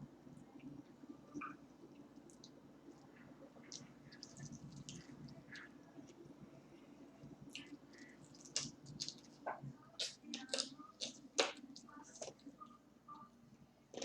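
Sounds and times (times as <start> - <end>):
crunchy chewing: 2.2 - 6.2, 7.5 - 12.5.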